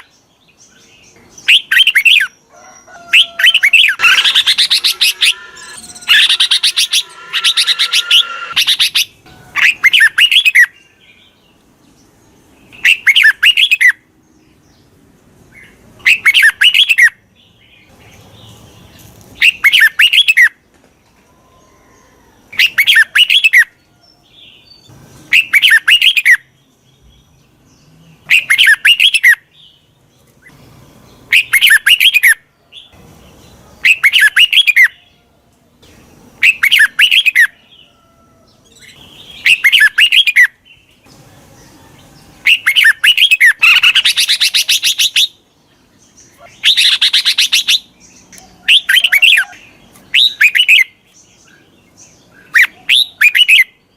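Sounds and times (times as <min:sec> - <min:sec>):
bird warbling calls: 0:03.0 - 0:10.7, 0:36.4 - 0:37.6, 0:39.4 - 0:40.5, 0:42.4 - 0:45.4, 0:46.2 - 0:50.9.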